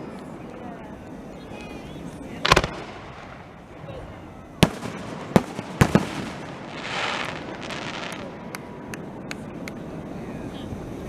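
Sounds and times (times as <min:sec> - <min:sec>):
fireworks rush: 0:02.0 - 0:11.0
fireworks small sharp pops: 0:02.4 - 0:03.4, 0:04.6 - 0:09.8
fireworks bangs: 0:02.4 - 0:09.6.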